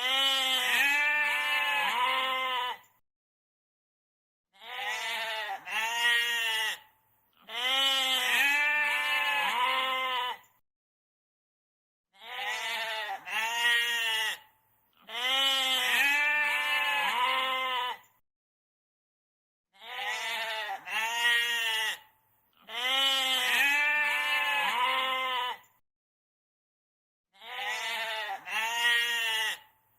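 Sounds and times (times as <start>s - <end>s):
goat bleating: 0.0s - 2.9s, 4.6s - 10.5s, 12.2s - 18.1s, 19.8s - 25.7s, 27.4s - 29.7s.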